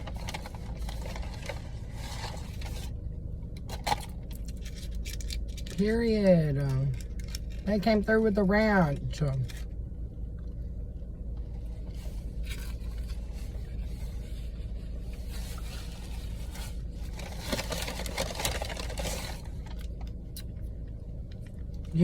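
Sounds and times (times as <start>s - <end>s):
food wrapper rustling: 0.0s - 2.9s, 3.7s - 5.8s, 6.9s - 7.7s, 15.2s - 20.1s
steady low hum: 0.0s - 22.0s.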